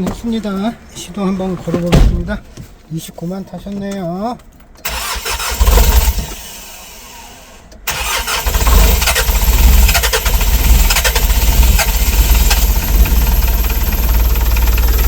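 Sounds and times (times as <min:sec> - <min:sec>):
diesel engine clattering: 0:04.8 - 0:06.4, 0:07.8 - 0:15.0
diesel engine starting: 0:04.8 - 0:15.0.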